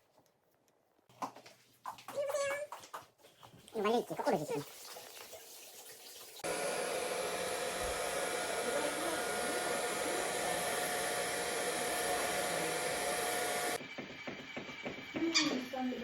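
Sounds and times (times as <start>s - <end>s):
electric motor blowing air: 6.4s - 14.0s.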